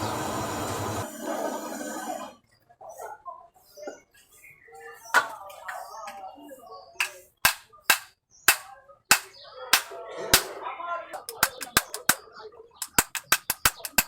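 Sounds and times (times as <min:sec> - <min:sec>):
sharp repeated knocks: 0:07.0 - 0:10.5.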